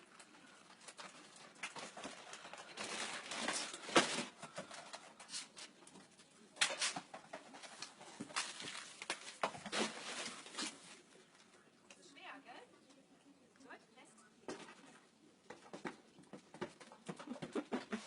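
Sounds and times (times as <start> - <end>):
grocery bags rustling: 0.0 - 5.8, 6.6 - 11.2.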